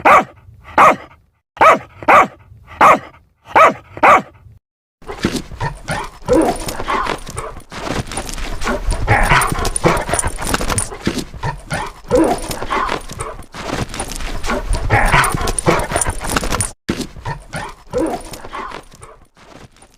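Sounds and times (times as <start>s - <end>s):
dogs barking: 0.0s - 4.4s, 9.1s - 10.9s, 14.9s - 16.4s
dogs whining: 5.8s - 10.9s, 11.5s - 16.7s.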